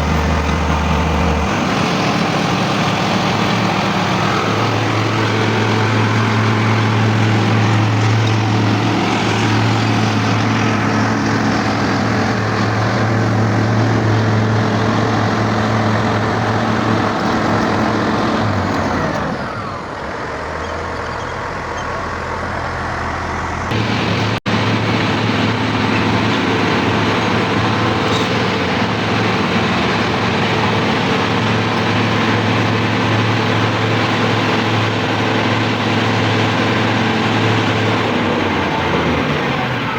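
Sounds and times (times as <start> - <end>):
diesel engine running under load: 0.0 - 39.9.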